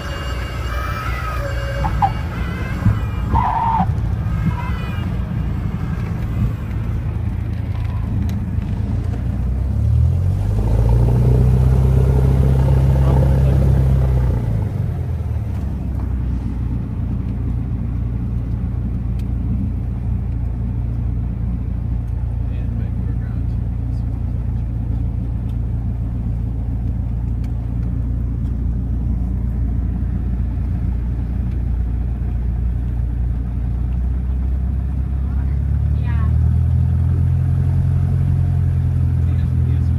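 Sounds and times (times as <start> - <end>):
airplane piston engine droning: 0.0 - 9.8.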